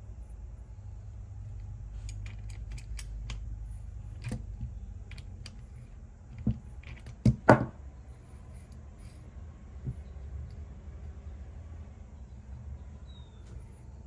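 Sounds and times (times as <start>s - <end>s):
low steady hum: 0.0s - 14.0s
metal parts and tools clinking: 2.0s - 7.7s.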